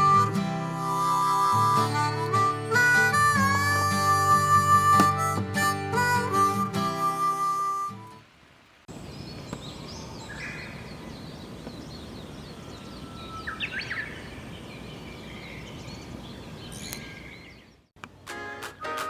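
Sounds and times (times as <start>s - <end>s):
birds chirping and calling: 9.2s - 17.8s.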